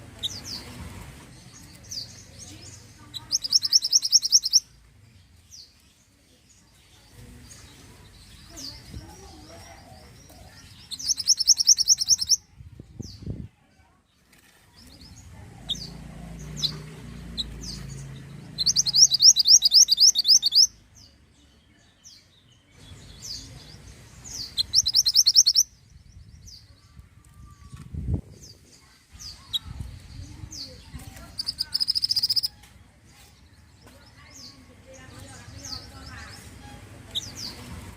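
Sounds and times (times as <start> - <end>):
songbird trilling: 1.7 - 4.8, 9.9 - 12.4, 15.6 - 20.8, 22.9 - 26.6, 29.2 - 32.6
bird high chips: 31.3 - 32.6.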